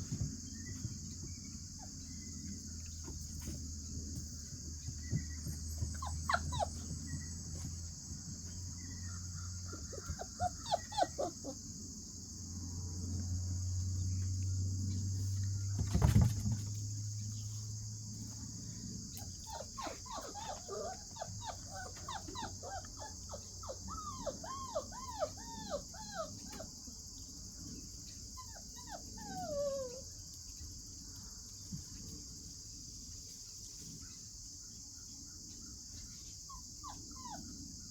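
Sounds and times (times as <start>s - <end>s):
puppy whining: 4.9s - 7.6s, 9.7s - 11.6s, 19.2s - 26.7s, 28.4s - 30.1s, 36.5s - 37.6s
puppy whimpering and yipping: 5.1s - 7.6s, 9.7s - 11.6s, 19.2s - 26.7s, 28.4s - 30.1s, 36.5s - 37.6s.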